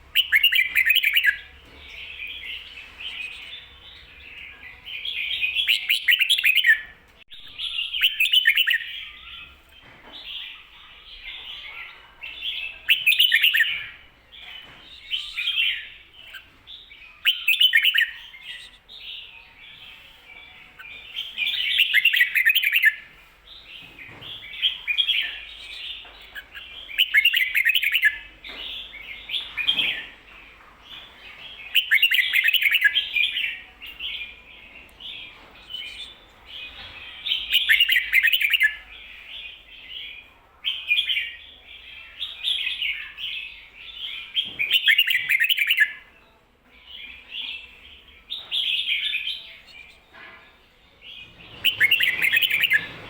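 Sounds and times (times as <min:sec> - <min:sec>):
bird singing chirpy phrases: 0:00.1 - 0:20.1, 0:31.4 - 0:46.1, 0:51.0 - 0:53.0.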